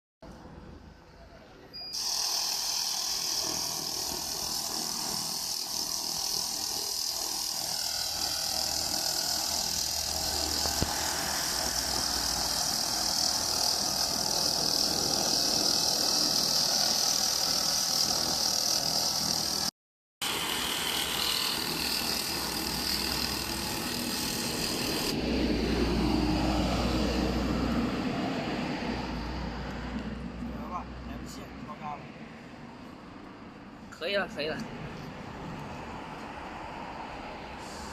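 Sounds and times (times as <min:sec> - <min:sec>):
laser cleaning hiss: 0:02.0 - 0:19.6.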